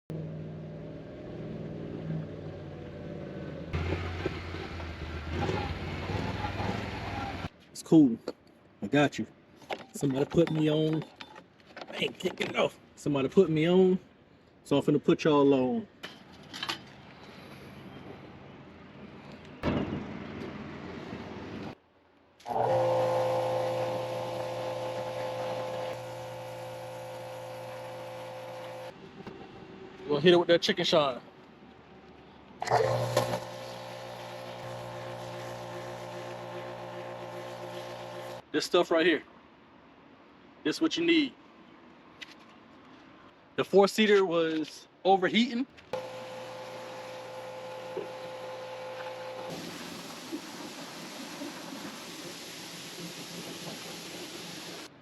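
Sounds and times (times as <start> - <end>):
thump: 19.6 - 20.1
motor running steadily: 22.5 - 28.9, 32.6 - 38.4, 46.0 - 49.7.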